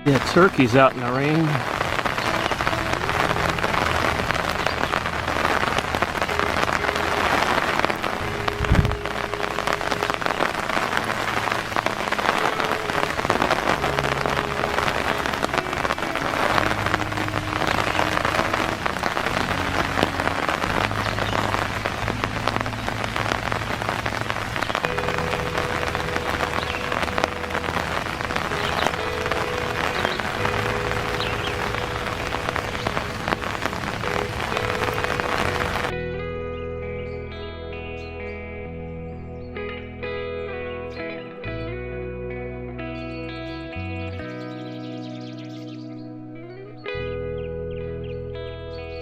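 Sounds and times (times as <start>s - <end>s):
steady rain falling: 0.0s - 36.0s.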